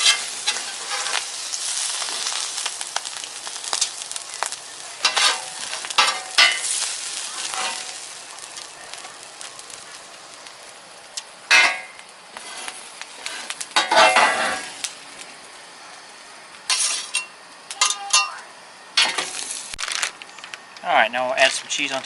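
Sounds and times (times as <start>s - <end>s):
metal spatula scraping steel: 0.0s - 1.2s, 5.0s - 6.7s, 11.5s - 14.8s, 16.7s - 17.3s
food sizzling on a griddle: 0.0s - 20.2s.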